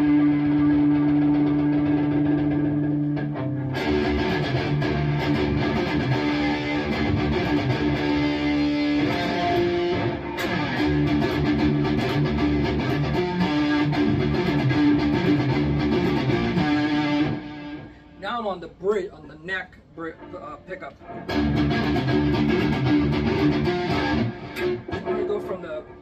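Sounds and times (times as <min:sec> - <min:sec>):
electric guitar riff: 0:00.0 - 0:18.2, 0:19.9 - 0:26.0.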